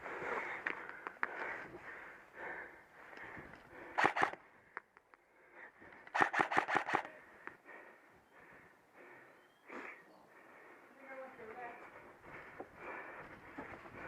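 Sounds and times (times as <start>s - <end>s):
airsoft rifle shots: 4.0s - 4.4s, 6.1s - 7.2s.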